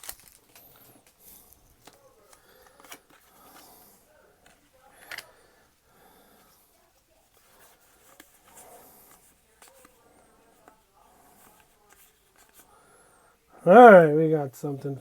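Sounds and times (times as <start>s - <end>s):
trading cards rustling: 0.0s - 5.5s.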